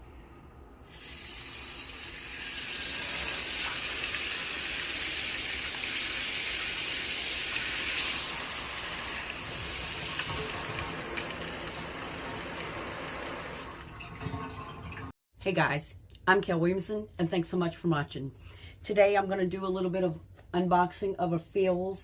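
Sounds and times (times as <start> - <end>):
water spraying from shower head: 0.9 - 13.9.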